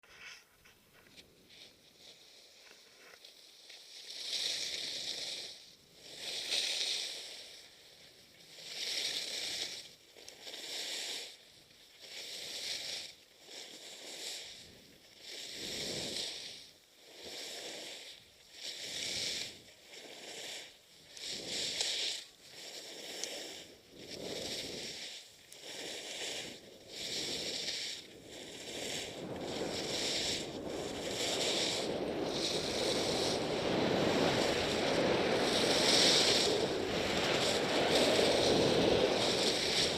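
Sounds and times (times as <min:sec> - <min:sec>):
skis scraping across snow: 0:00.0 - 0:39.9
wind noise on microphone: 0:13.9 - 0:39.9.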